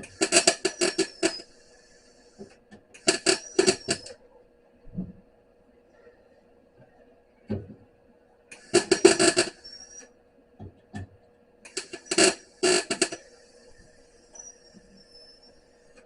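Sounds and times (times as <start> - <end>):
welder crackling: 0.0 - 1.5, 3.0 - 4.1, 8.5 - 10.0, 11.7 - 13.4
steady hum: 0.0 - 16.0.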